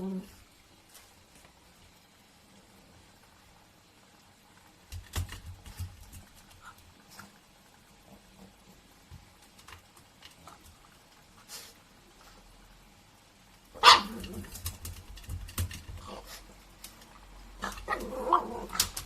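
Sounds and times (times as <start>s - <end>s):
dog barking: 13.8s - 14.2s.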